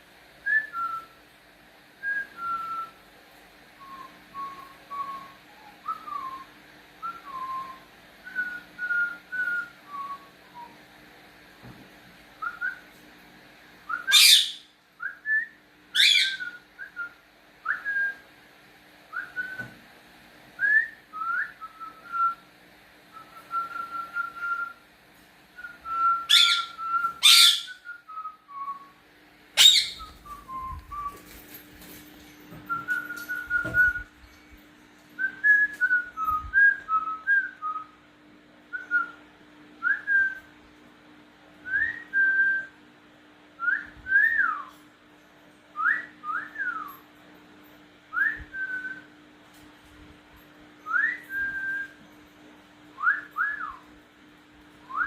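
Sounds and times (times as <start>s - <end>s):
whistled notes: 50.8s - 52.0s.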